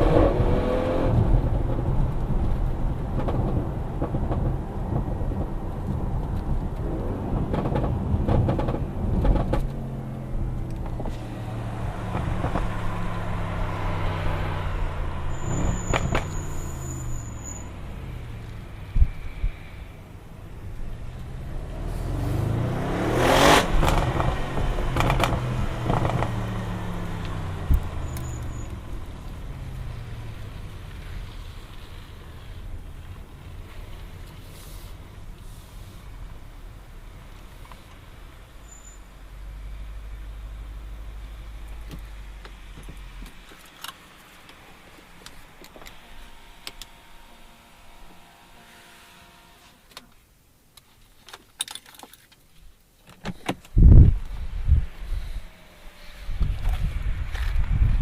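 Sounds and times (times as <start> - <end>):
car engine revving: 0.0 - 4.4, 7.6 - 18.9, 20.8 - 32.6
exhaust crackles and pops: 0.0 - 13.8, 20.4 - 38.4, 56.0 - 58.0.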